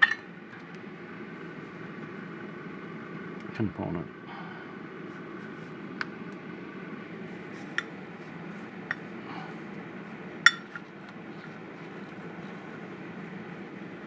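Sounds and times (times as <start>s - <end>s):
steady low hum: 0.0s - 14.0s
metal objects clinking on workbench: 10.5s - 10.8s.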